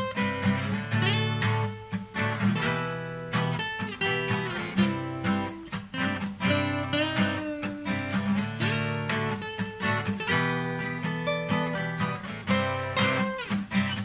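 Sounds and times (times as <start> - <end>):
acoustic guitars playing: 0.0 - 14.0.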